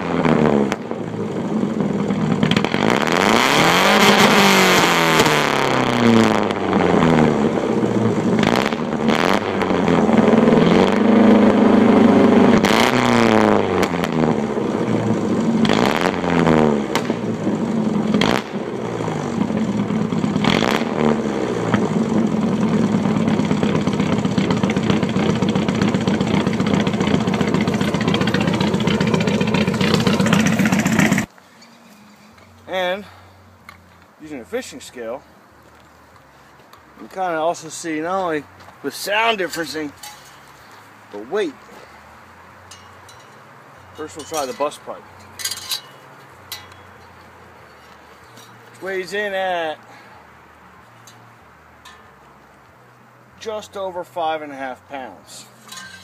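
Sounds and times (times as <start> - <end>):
car engine revving and idling: 0.0 - 31.3.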